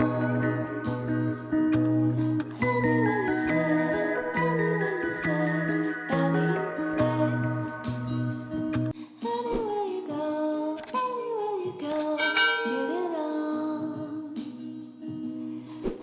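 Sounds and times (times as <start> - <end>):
sustained chords: 0.0 - 8.9
person singing: 0.0 - 16.0.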